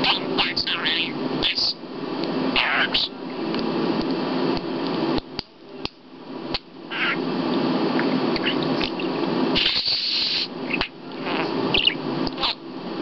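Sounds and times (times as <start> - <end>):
budgerigar chattering and warbling: 2.6 - 3.1, 6.9 - 7.2, 8.4 - 12.6.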